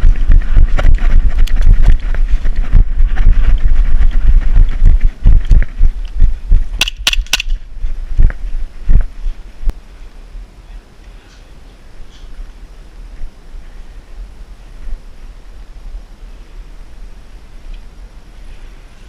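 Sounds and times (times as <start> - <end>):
hurried footsteps: 0.0 - 9.8
sharp cracks: 5.4 - 7.7.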